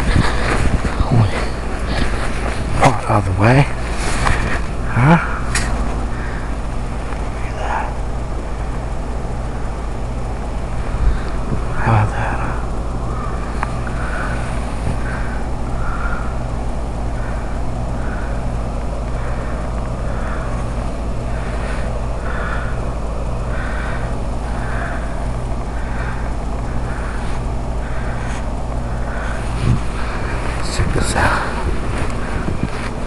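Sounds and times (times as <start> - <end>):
footsteps crunching through snow: 0.0 - 4.7
low rumble: 0.0 - 33.0.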